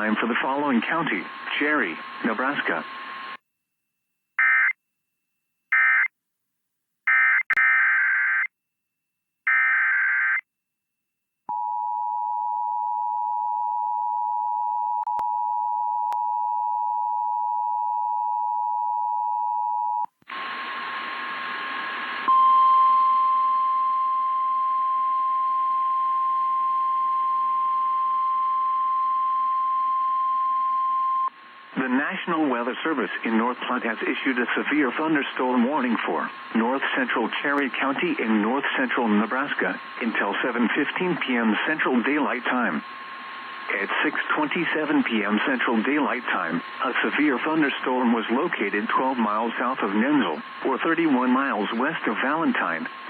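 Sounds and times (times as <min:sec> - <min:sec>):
radio static: 0:00.0 - 0:03.4, 0:31.7 - 0:53.0
single-pitch warning alarm tone: 0:04.4 - 0:04.8, 0:05.7 - 0:06.1.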